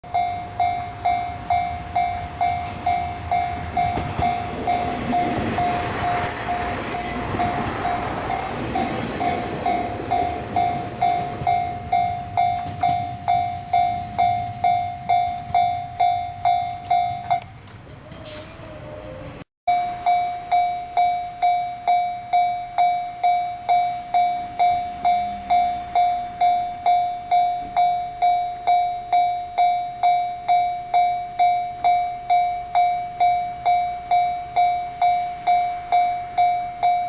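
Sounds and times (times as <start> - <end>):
level crossing alarm dinging: 0.1 - 17.4
train wheels on rails: 0.1 - 19.4.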